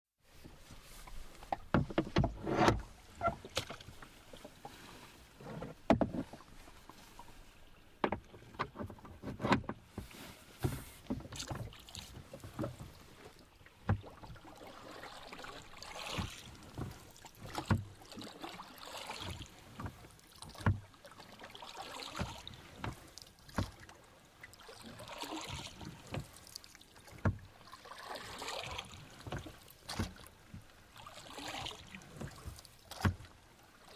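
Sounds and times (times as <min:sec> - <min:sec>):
water swishing and splashing: 0:00.2 - 0:33.9
wooden oars knocking: 0:01.1 - 0:04.5, 0:05.4 - 0:06.6, 0:08.0 - 0:13.0, 0:13.8 - 0:14.1, 0:16.0 - 0:17.9, 0:19.7 - 0:20.9, 0:22.1 - 0:23.8, 0:28.7 - 0:30.7, 0:31.4 - 0:33.3.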